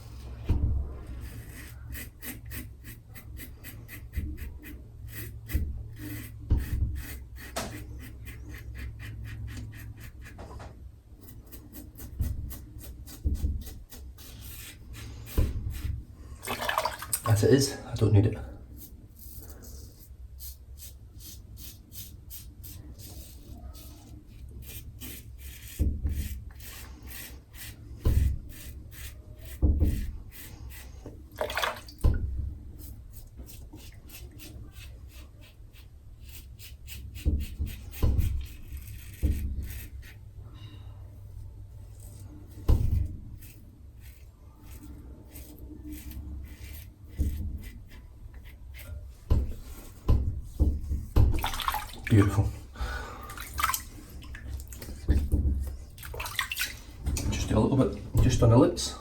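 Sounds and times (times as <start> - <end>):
razor scraping stubble: 32.8 - 40.4, 41.8 - 50.0.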